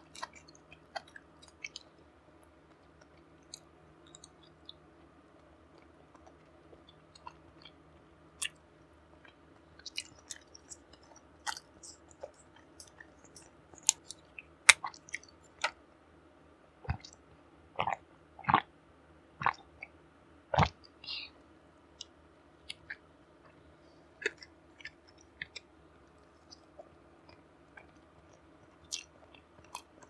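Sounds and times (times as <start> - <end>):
crisp chewing crackles: 9.9 - 14.3, 28.8 - 30.0.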